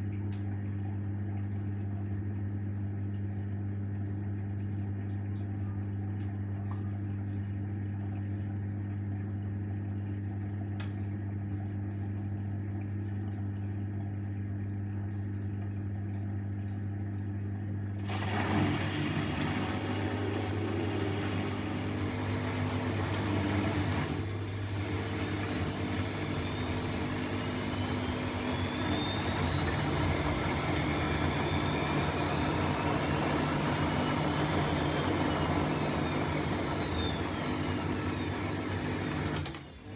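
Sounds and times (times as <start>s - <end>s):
washing machine hum: 0.0s - 39.9s
motor whine rising in pitch: 18.0s - 39.9s.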